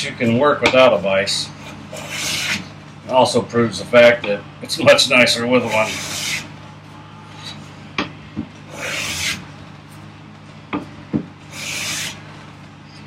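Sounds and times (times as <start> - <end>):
hand plane hissing strokes: 1.6 - 2.6, 5.6 - 6.5, 8.7 - 9.5, 11.5 - 12.2.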